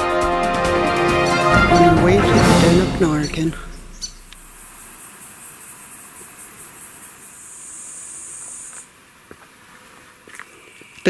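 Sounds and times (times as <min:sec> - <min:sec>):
lower insect buzzing call: 0:02.5 - 0:09.0
high-pitched pulsing insect buzz: 0:03.0 - 0:08.8.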